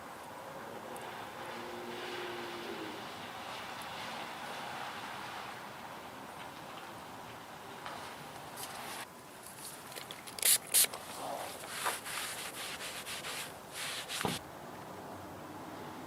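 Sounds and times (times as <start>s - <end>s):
rubbing and scraping handling noises: 8.6s - 14.4s
short sharp hissing bursts: 10.4s - 14.4s.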